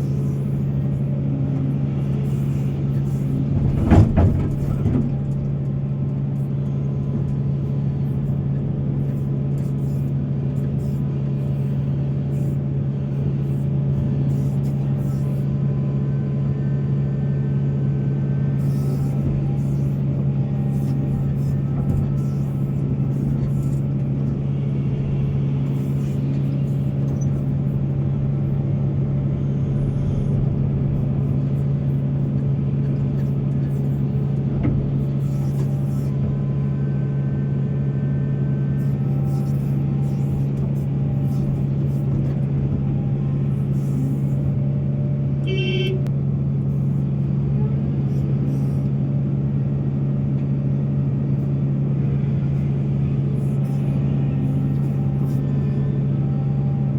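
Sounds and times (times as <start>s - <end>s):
heavy diesel engine running: 0.0s - 56.9s.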